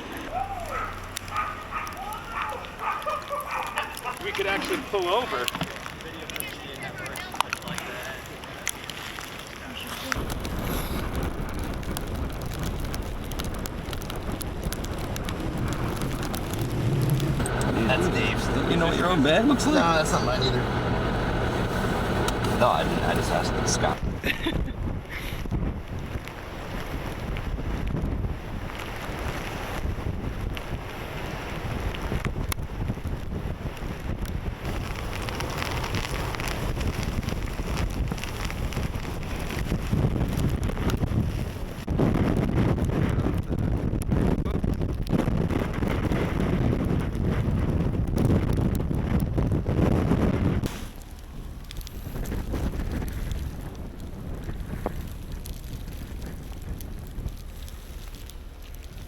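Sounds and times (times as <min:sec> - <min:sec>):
wind noise: 0:10.1 - 0:59.0
car engine and road rumble: 0:10.2 - 0:24.0, 0:49.5 - 0:59.0
hiss of blowing snow: 0:17.3 - 0:24.0, 0:50.7 - 0:51.1.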